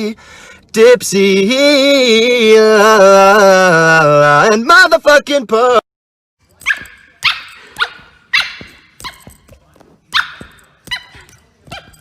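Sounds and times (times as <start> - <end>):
dog barking: 6.6 - 9.4, 10.1 - 12.0.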